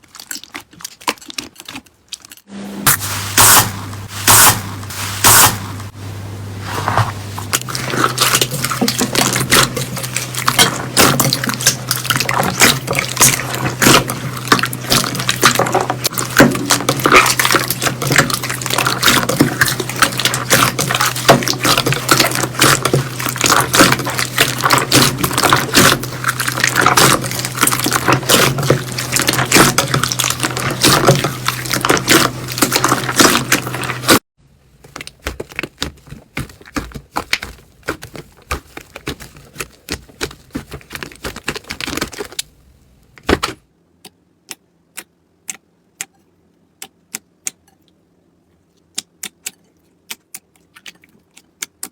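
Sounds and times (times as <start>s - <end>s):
slime squelching and popping: 0.0s - 2.5s, 7.4s - 42.5s
steady low hum: 2.5s - 48.9s.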